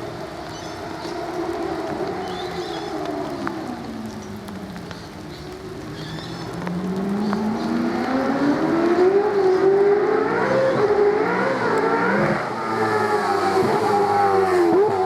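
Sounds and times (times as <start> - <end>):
car engine accelerating: 6.1 - 15.0.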